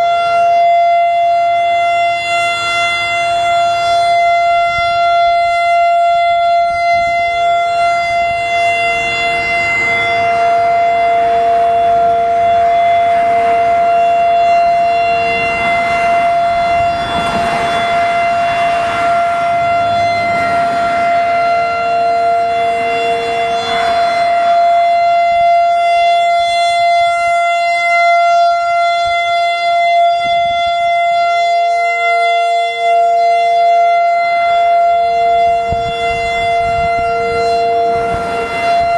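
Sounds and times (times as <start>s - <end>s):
electronic warning siren: 0.0s - 38.9s
weaker pulsing siren tone: 0.0s - 38.9s
rushing noise: 14.7s - 25.7s.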